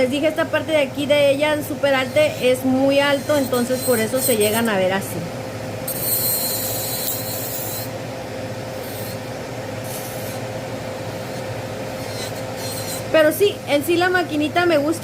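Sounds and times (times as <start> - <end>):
air conditioner humming: 0.0 - 15.0
electric nail drill grinding: 1.5 - 5.0, 5.8 - 13.6.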